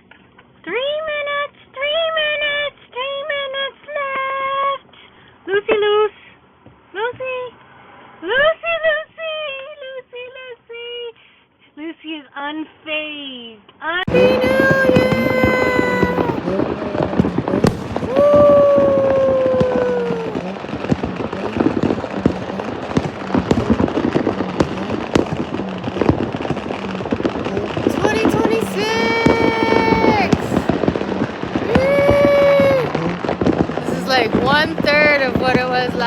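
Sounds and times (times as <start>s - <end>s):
fireworks popping and crackling: 14.1s - 36.0s.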